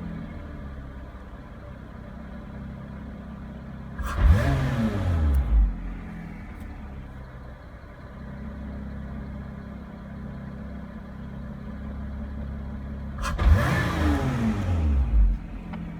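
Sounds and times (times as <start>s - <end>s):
car engine idling: 0.0s - 15.9s
engine coughing and revving: 3.9s - 6.9s, 13.1s - 15.9s.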